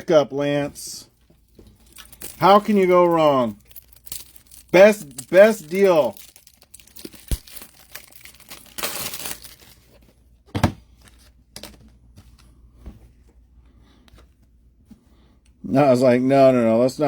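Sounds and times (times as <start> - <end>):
card pack wrapper tearing: 1.8 - 10.0.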